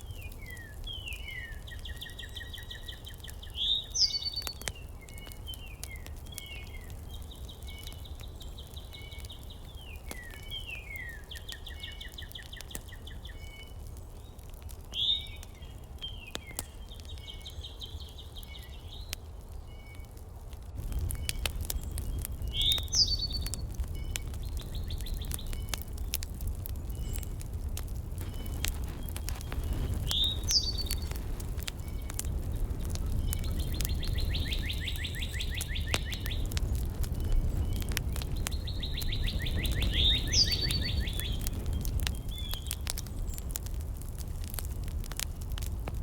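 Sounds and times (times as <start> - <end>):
small birds singing trills: 0.0 - 20.2, 20.8 - 46.0
steady low rumble: 23.5 - 42.4.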